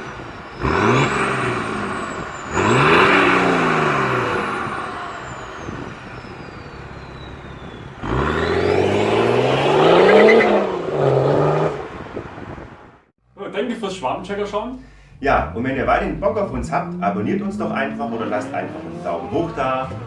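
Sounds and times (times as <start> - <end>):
faint high turbo whistle: 0.0 - 11.7
diesel engine revving: 0.0 - 13.1, 13.9 - 20.0.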